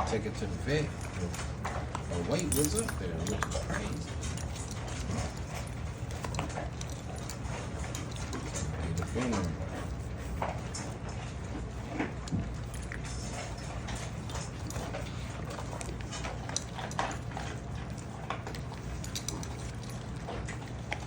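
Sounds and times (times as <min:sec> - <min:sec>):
low steady hum: 0:00.0 - 0:21.0
puppies eating: 0:00.0 - 0:21.0.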